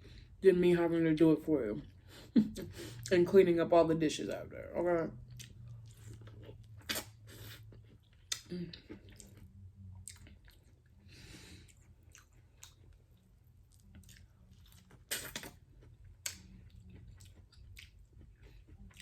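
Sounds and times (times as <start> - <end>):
person chewing food: 5.2 - 19.0.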